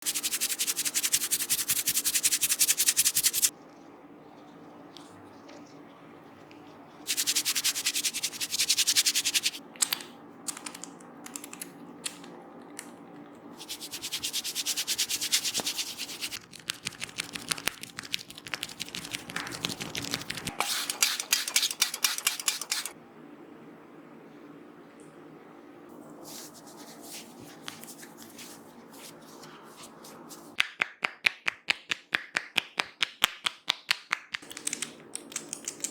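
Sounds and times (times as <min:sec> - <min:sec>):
hands rubbing through hair: 0:00.0 - 0:03.5, 0:07.0 - 0:09.6, 0:13.6 - 0:22.9, 0:26.2 - 0:30.6.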